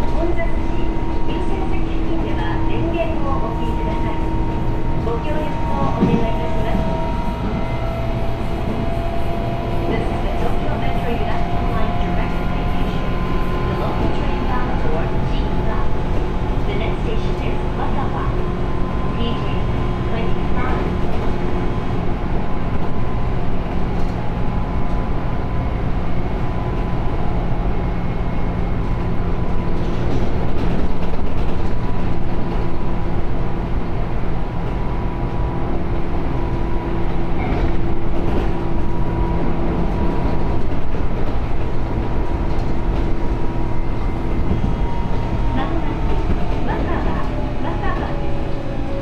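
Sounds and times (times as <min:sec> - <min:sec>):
electric train running rumble: 0:00.0 - 0:49.0.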